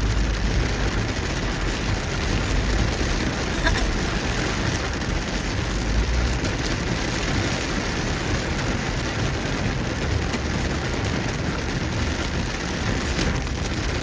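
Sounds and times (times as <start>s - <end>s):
heavy rain on a car: 0.0s - 14.0s
tyre and road noise: 0.0s - 14.0s.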